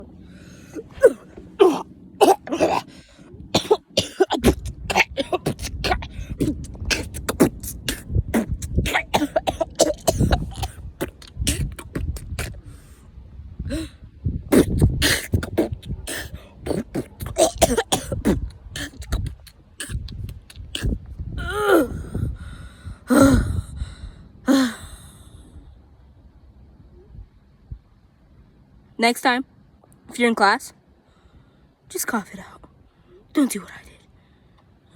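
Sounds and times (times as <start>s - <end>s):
gasps: 0.2s - 13.0s, 13.7s - 25.1s
person coughing and choking: 0.7s - 12.6s, 14.5s - 22.0s.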